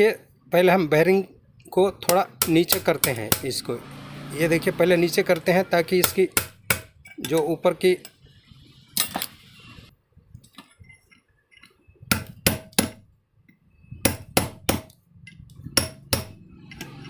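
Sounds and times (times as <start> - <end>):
hammer tapping on metal: 2.0 - 3.5, 14.0 - 17.0.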